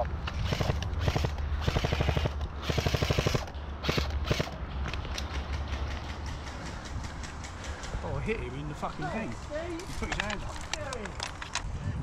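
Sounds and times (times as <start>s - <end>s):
airsoft gun firing: 0.4s - 4.6s.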